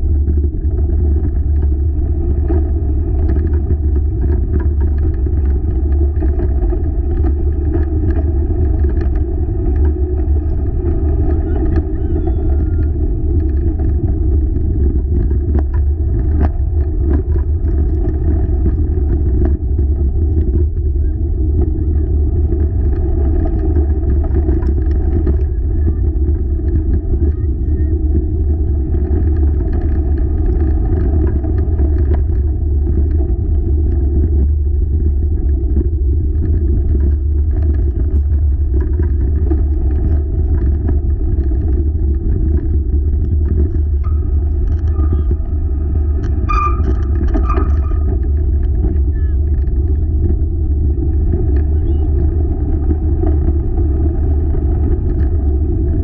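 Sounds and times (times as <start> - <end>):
wheeled rig rumbling: 0.0 - 56.0.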